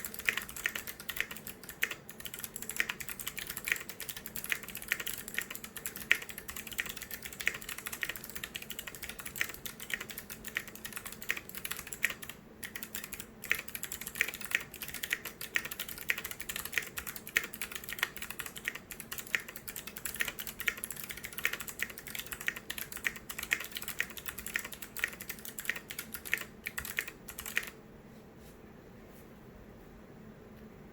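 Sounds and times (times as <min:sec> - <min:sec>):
fast typing on mechanical keyboard: 0:00.0 - 0:27.8.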